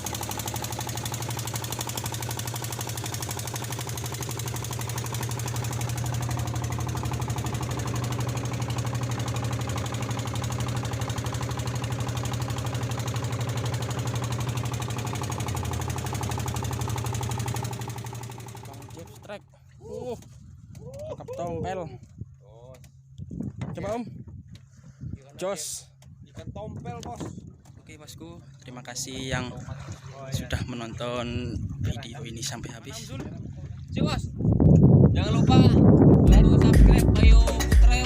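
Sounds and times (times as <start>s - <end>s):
boat engine knocking: 0.0s - 19.4s, 25.9s - 28.6s, 34.6s - 38.0s.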